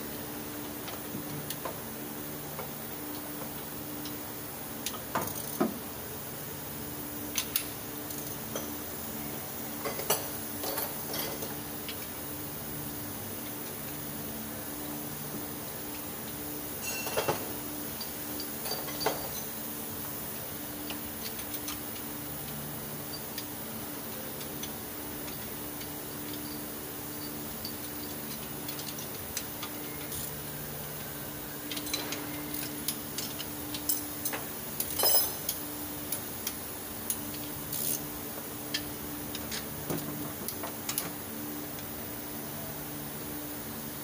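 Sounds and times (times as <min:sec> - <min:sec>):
metallic clicks and clinks: 0:16.8 - 0:19.6, 0:24.4 - 0:30.3, 0:31.7 - 0:38.0.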